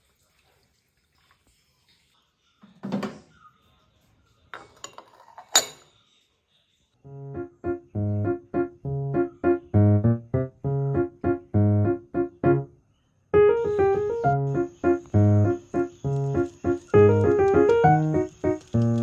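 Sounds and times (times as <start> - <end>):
dishes clinking: 4.6 - 6.0
piano music with repeated chords: 7.0 - 19.0.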